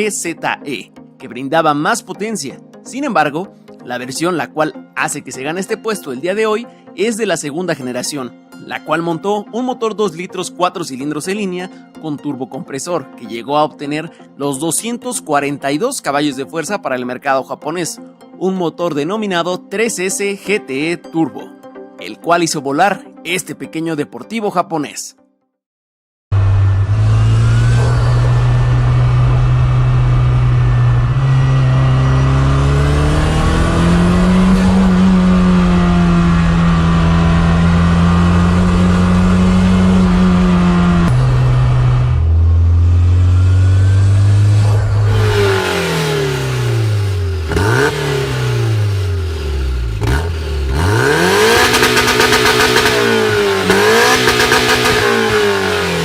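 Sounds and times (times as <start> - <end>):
car engine running and revving: 26.3 - 56.0.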